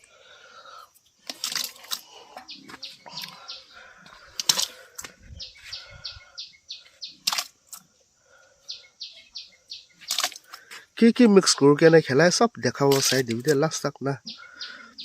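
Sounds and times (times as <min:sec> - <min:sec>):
bird chirping rapidly: 0:02.4 - 0:03.9, 0:05.3 - 0:07.4, 0:08.6 - 0:10.2, 0:14.1 - 0:15.0.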